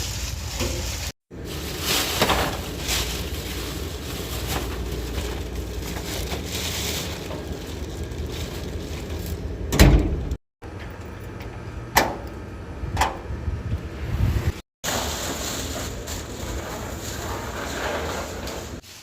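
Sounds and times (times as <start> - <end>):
rustling and crinkling items: 0.0 - 9.7, 14.8 - 19.0.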